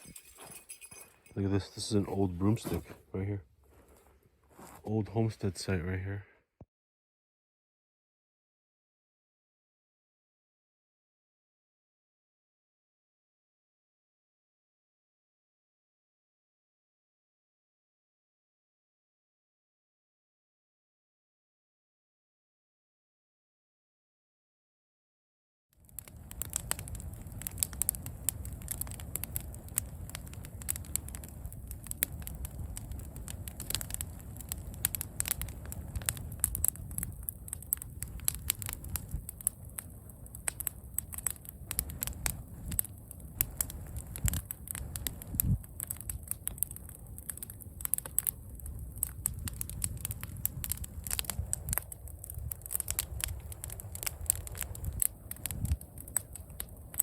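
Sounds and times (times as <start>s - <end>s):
footsteps crunching on dry brush: 2.0s - 5.0s
wind rumble on microphone: 25.9s - 57.0s.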